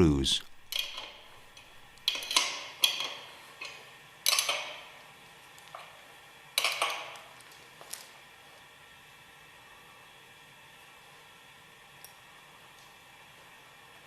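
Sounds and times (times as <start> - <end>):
wrench clinking on metal screws: 0.5 - 4.6.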